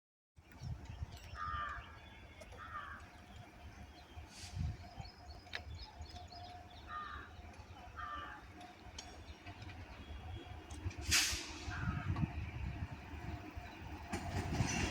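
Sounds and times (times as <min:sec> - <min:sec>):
small birds chirping: 0:00.4 - 0:10.9
crow cawing: 0:01.4 - 0:01.8, 0:02.6 - 0:03.0, 0:06.9 - 0:07.3, 0:08.0 - 0:08.4.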